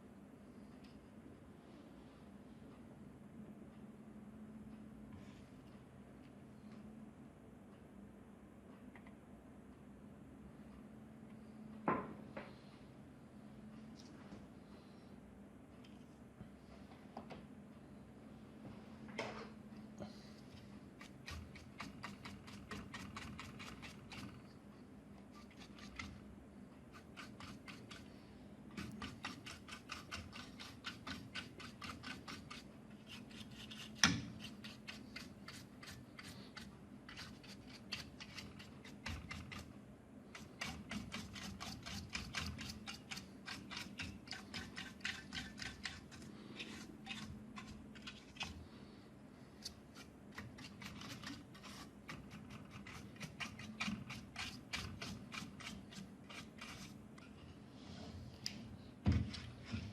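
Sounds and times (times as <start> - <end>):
faint steady hum: 0.0 - 59.9
small clicks and scratches: 20.5 - 24.6, 25.2 - 26.2, 26.8 - 39.7, 40.3 - 48.7, 49.6 - 57.5.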